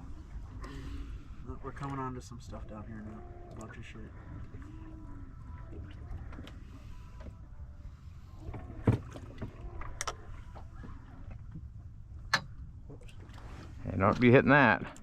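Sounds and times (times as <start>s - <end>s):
wind and water rumbling: 0.0s - 15.0s.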